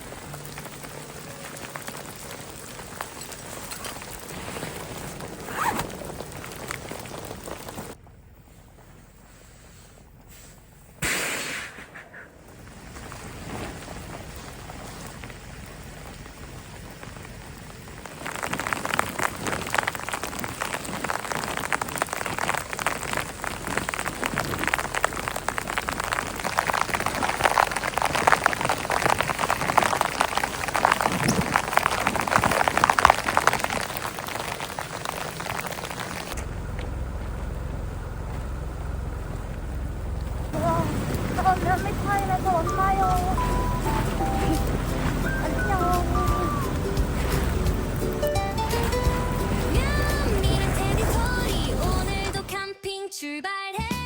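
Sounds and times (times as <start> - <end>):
rain pattering: 0.0 - 8.0, 12.5 - 52.6
short loud noise: 11.0 - 12.3.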